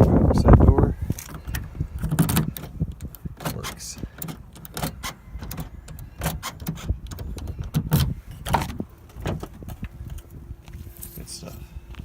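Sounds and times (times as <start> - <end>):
key clicking and rattling: 1.2 - 10.3.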